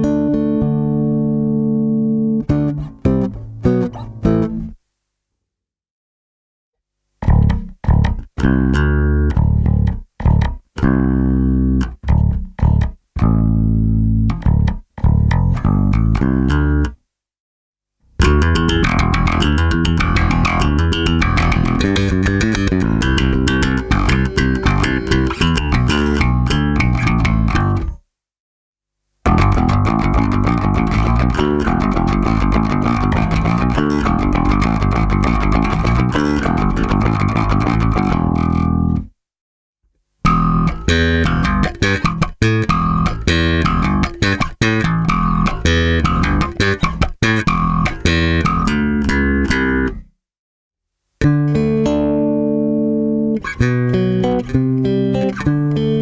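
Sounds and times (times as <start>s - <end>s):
solo electric bass: 0.0s - 4.8s, 7.2s - 17.0s, 18.1s - 28.0s, 29.3s - 39.1s, 40.2s - 50.1s, 51.2s - 56.0s.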